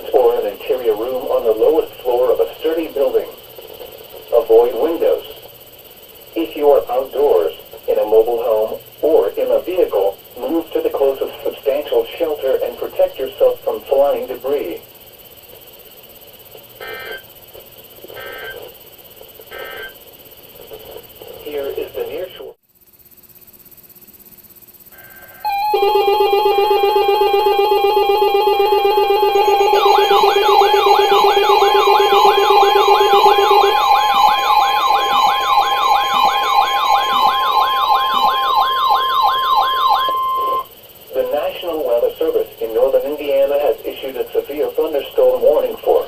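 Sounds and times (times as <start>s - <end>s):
warbling data tones: 0.0s - 15.3s, 16.1s - 17.4s, 18.1s - 20.6s, 24.9s - 43.8s
steady radio hiss: 0.0s - 46.0s
siren-like sweeping tone: 25.4s - 40.7s.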